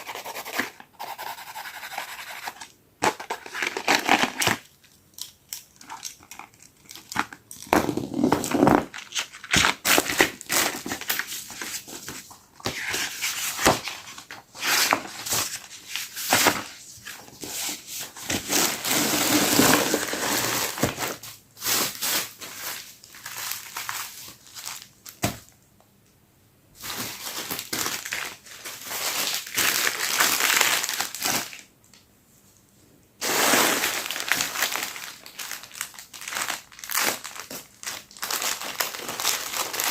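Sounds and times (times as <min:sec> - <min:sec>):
packaging tearing: 0:03.0 - 0:04.6, 0:33.2 - 0:39.9
packaging crinkling and rustling: 0:03.0 - 0:25.6, 0:26.8 - 0:31.7, 0:33.2 - 0:39.9.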